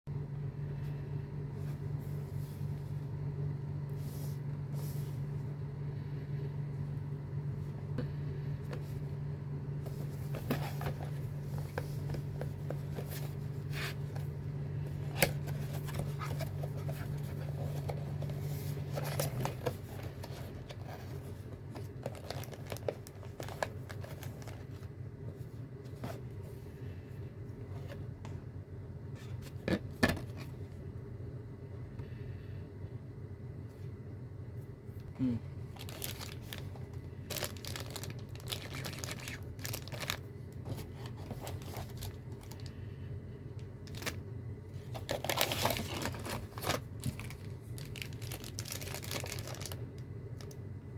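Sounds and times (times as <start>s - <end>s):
steady low hum: 0.1s - 50.9s
packaging clicks and rustling: 9.9s - 24.9s, 35.7s - 42.7s, 43.6s - 50.6s
packaging tearing: 22.1s - 24.6s, 35.8s - 36.7s, 37.3s - 40.2s, 45.0s - 49.8s.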